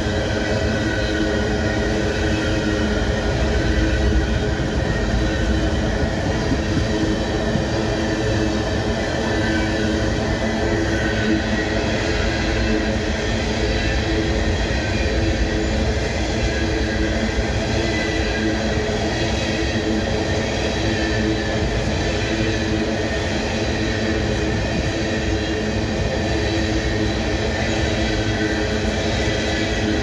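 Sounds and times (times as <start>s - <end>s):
train wheels rumbling on rails: 0.0s - 30.0s.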